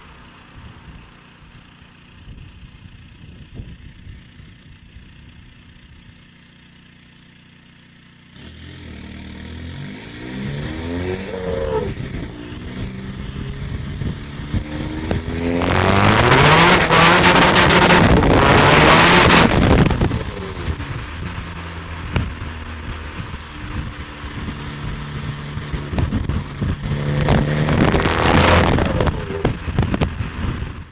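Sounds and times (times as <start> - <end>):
diesel engine revving: 8.3 - 30.9.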